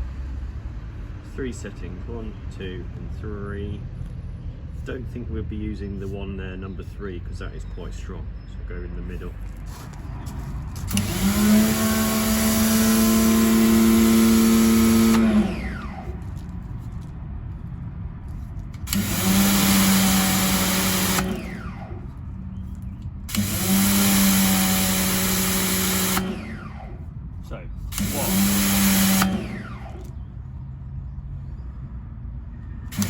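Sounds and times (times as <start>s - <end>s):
pressure washer motor humming: 10.9s - 16.5s, 18.7s - 22.2s, 23.2s - 27.1s, 27.8s - 30.2s
water jet hissing: 27.9s - 29.4s.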